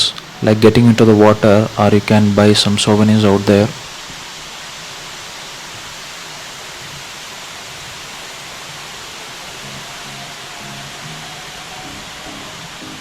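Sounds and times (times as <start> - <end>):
faint music: 0.0 - 3.9, 7.4 - 13.0
waterfall roaring: 0.0 - 13.0.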